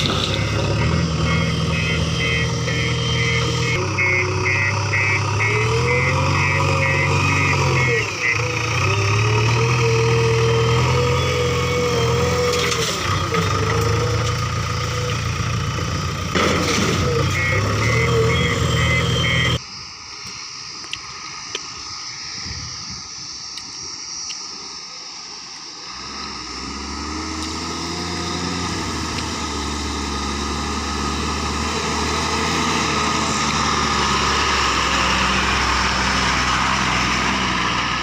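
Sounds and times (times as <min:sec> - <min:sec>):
backhoe diesel engine revving: 0:00.0 - 0:19.6, 0:25.8 - 0:38.0
fast alarm beeps: 0:00.2 - 0:08.6, 0:17.3 - 0:19.6.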